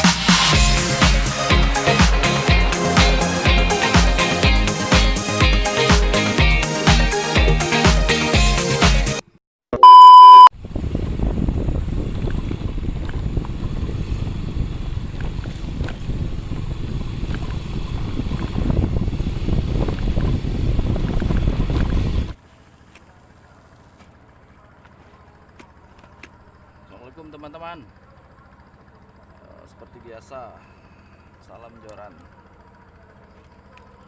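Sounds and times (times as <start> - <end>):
upbeat intro music: 0.0 - 9.2
electronic beep tone: 9.8 - 10.5.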